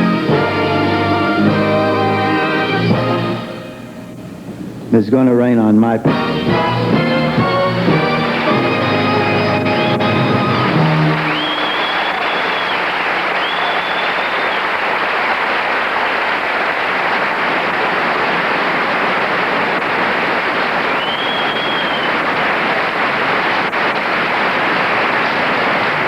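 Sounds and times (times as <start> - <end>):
audience applauding: 6.3 - 26.0
high held whistle: 7.6 - 15.0, 20.8 - 22.7.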